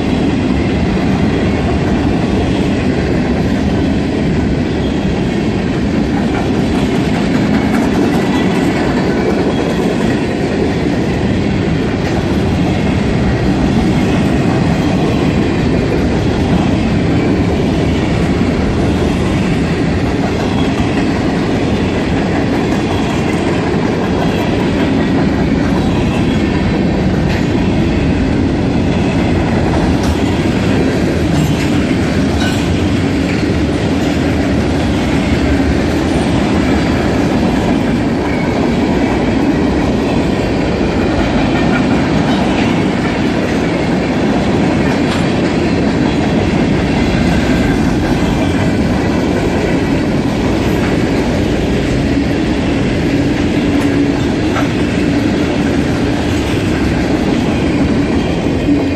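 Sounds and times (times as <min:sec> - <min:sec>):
train wheels rumbling on rails: 0:00.0 - 0:58.9.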